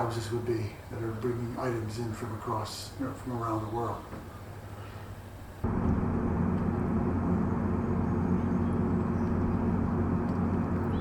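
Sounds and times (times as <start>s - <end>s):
engine running with low hum: 4.4s - 11.0s.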